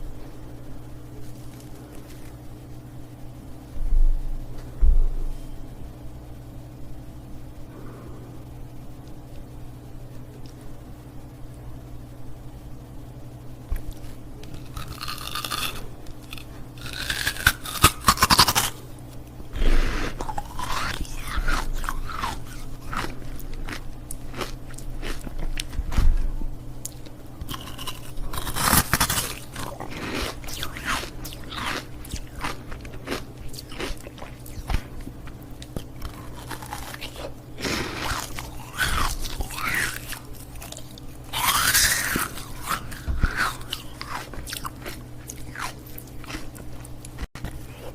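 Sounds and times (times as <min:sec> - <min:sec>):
ice crunching between teeth: 0:13.8 - 0:18.8, 0:19.7 - 0:25.8, 0:26.8 - 0:47.9.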